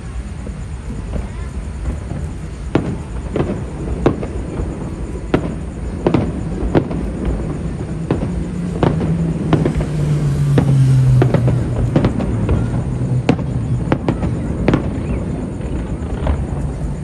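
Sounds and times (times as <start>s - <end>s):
fireworks bangs: 0.3s - 17.0s
steady rumbling: 5.4s - 17.0s.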